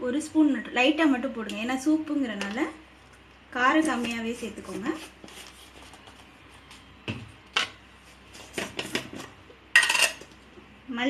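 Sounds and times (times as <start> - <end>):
metal spoon clinking on cookware: 9.8 - 10.2.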